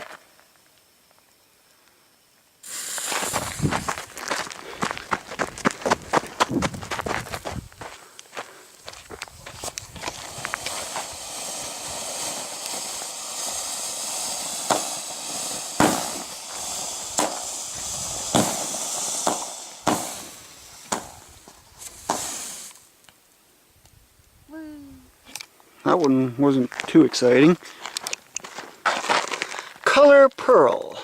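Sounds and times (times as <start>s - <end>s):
firework pops: 2.6s - 4.5s, 9.1s - 22.9s
firework hissing: 2.6s - 5.2s, 7.4s - 23.1s.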